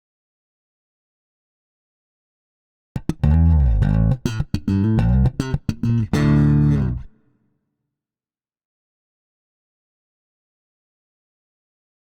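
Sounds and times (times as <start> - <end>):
electric bass plucked notes: 3.0 - 7.2.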